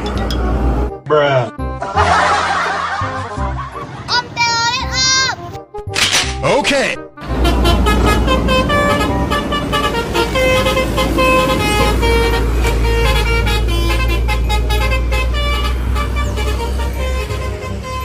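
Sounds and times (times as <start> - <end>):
musical vehicle horn: 7.0 - 18.0
engine rumble: 7.2 - 18.0.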